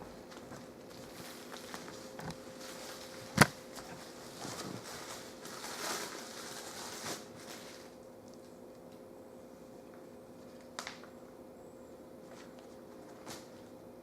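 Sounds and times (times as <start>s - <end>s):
faint steady hum: 0.0s - 14.0s
packaging rustling: 0.9s - 7.9s.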